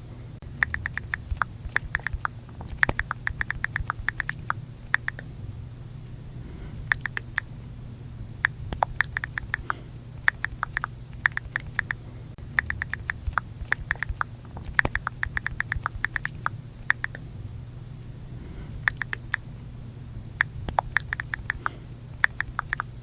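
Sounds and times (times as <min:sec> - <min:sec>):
faint low hum: 0:00.0 - 0:23.0
phone keyboard clicks: 0:00.6 - 0:05.2, 0:06.9 - 0:07.4, 0:08.7 - 0:12.0, 0:12.6 - 0:17.2, 0:18.9 - 0:19.4, 0:20.7 - 0:22.9.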